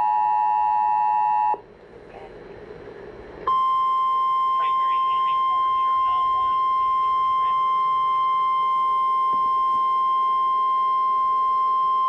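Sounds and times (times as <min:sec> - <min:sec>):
steady high alarm tone: 0:03.5 - 0:12.0.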